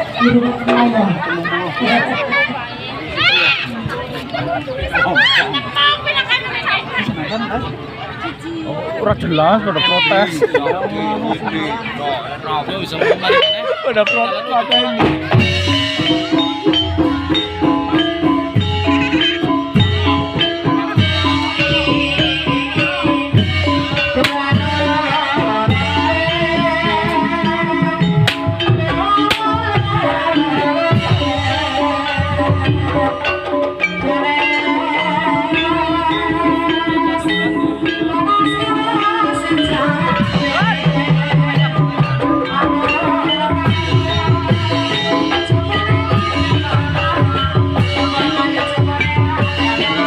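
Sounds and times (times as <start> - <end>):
mallet-struck tuned percussion melody: 0.0 - 2.5, 9.0 - 50.0
gamelan ensemble playing: 0.0 - 7.6, 8.4 - 50.0
steady drum beat: 12.4 - 50.0.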